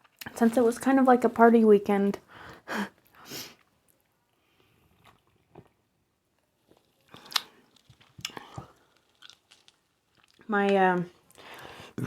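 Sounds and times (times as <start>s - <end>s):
person chewing food: 3.6s - 11.7s.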